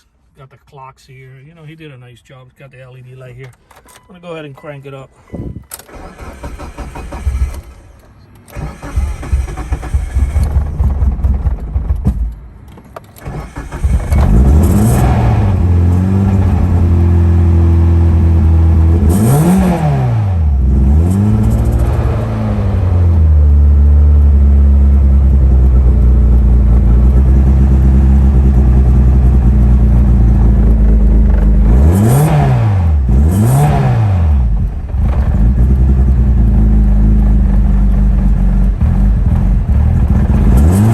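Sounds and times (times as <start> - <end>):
car engine cranking: 5.6 - 40.9
car engine revving and idling: 13.2 - 40.9.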